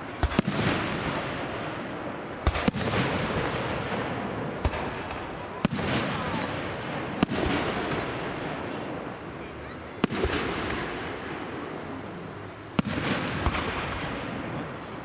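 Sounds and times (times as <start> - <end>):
fireworks bangs with crackle: 0.0 - 15.0.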